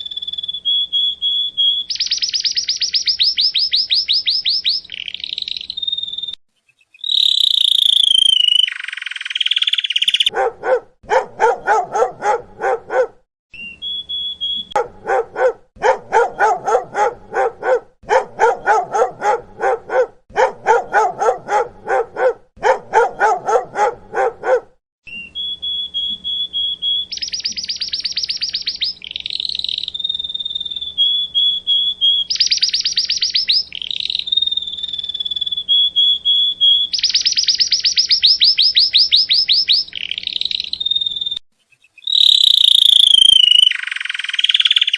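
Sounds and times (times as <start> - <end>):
high-pitched chirping and trilling: 0.0 - 10.3, 13.5 - 15.5, 25.0 - 44.9
high whistle-like tone: 7.1 - 8.8, 42.1 - 43.8
dog barking: 10.2 - 13.2, 14.7 - 24.8.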